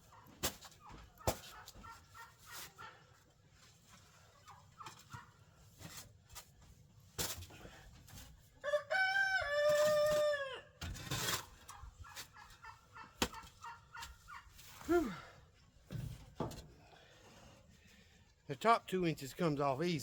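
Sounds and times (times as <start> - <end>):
hens clucking: 0.1 - 3.0, 11.4 - 14.9
rooster crowing: 8.6 - 10.8.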